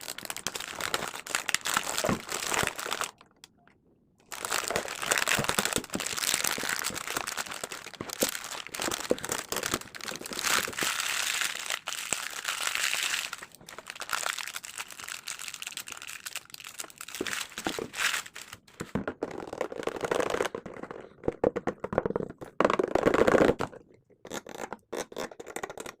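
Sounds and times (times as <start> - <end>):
plastic packet crinkling: 0.0 - 3.5, 4.2 - 18.9.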